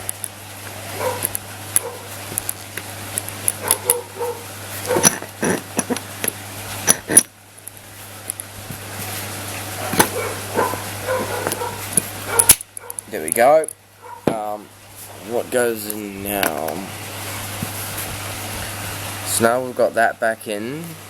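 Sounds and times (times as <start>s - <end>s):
dog barking: 1.0s - 2.1s, 3.6s - 5.1s, 9.8s - 13.0s, 14.0s - 14.3s
metal parts clicking and knocking: 1.1s - 4.1s, 4.8s - 8.5s, 11.2s - 14.4s.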